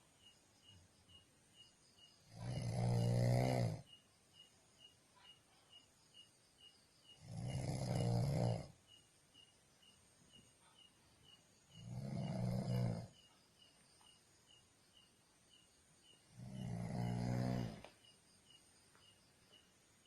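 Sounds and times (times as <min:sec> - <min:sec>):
person snoring: 0:02.3 - 0:03.8, 0:07.2 - 0:08.7, 0:11.8 - 0:13.1, 0:16.4 - 0:17.9.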